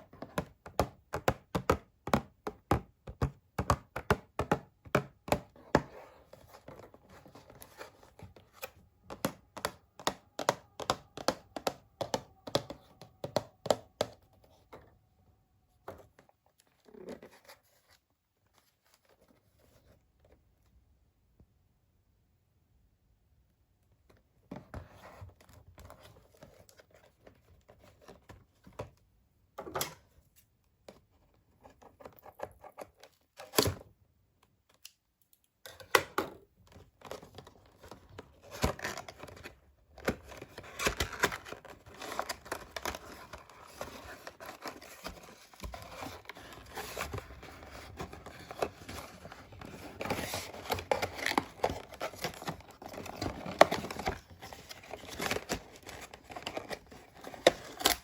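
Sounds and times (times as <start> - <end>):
cardboard and plastic crinkling: 36.7 - 58.0.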